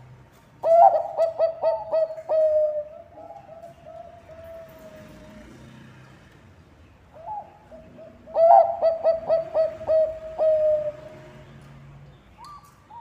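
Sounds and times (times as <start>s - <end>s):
dove cooing: 0.6s - 5.4s, 7.2s - 11.2s.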